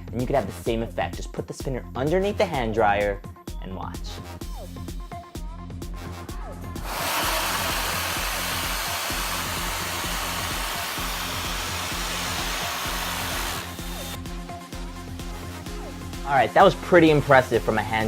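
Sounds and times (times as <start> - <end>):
hand dryer blowing air: 6.8 - 14.7.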